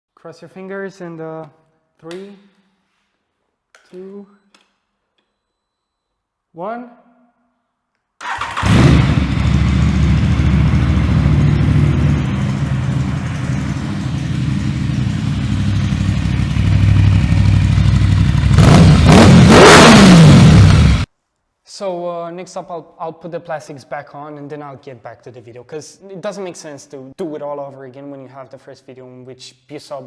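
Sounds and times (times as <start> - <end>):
motorcycle engine revving: 8.2 - 21.1
motorcycle engine starting and idling: 8.2 - 21.1.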